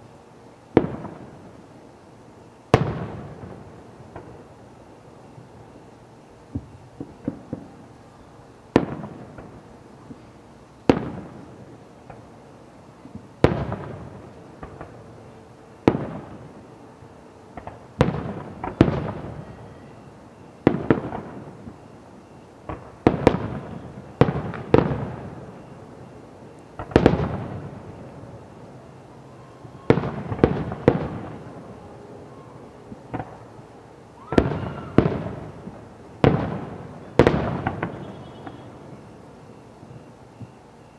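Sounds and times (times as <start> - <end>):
fireworks crackling pops: 0.6 - 40.9
fireworks booming with echo: 0.7 - 40.9.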